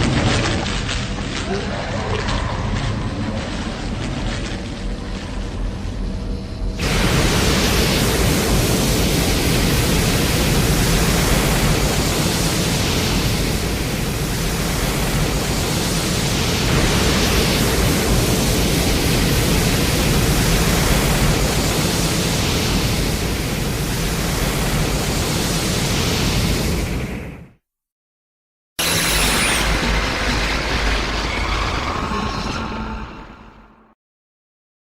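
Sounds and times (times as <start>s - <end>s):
monster roar: 31.1s - 33.8s.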